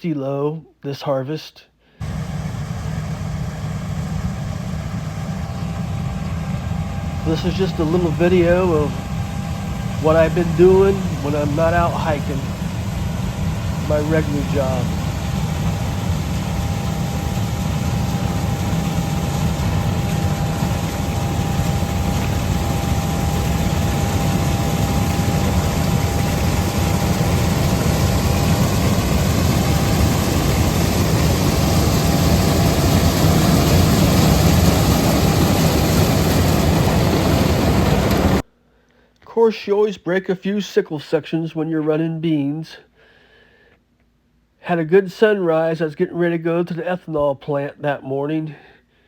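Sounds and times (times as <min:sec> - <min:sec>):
combine harvester engine drone: 0:02.0 - 0:38.4
thin steady whine: 0:02.0 - 0:38.5.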